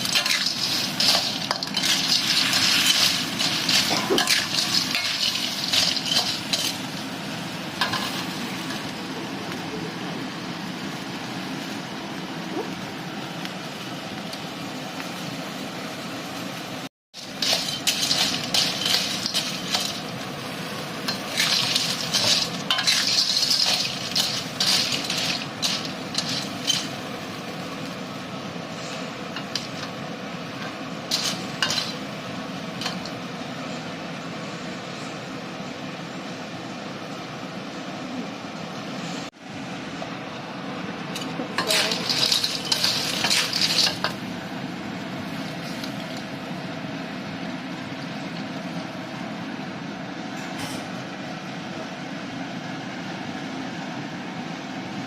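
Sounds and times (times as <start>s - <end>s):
spatula scraping pan: 0.0s - 6.8s
sizzling: 0.0s - 37.8s, 38.6s - 50.0s.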